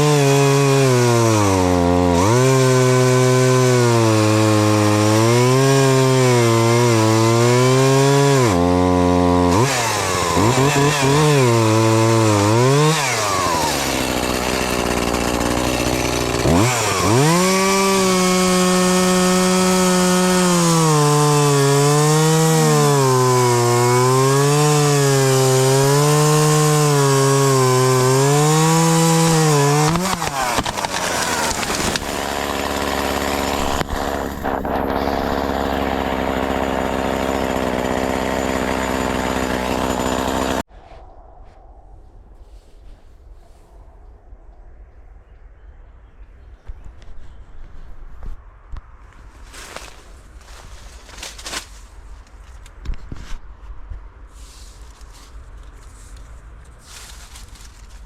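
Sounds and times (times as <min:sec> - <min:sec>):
chainsaw revving and cutting wood: 0:00.0 - 0:40.7.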